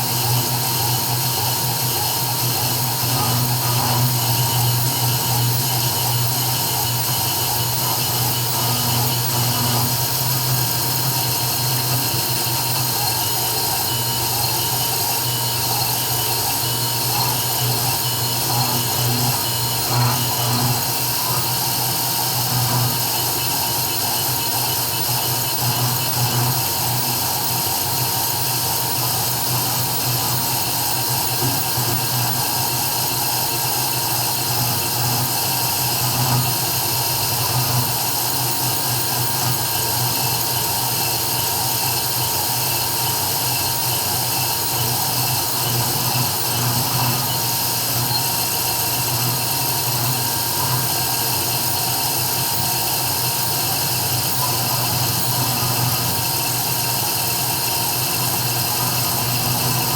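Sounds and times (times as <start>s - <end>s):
router spindle motor humming: 0.0s - 59.9s.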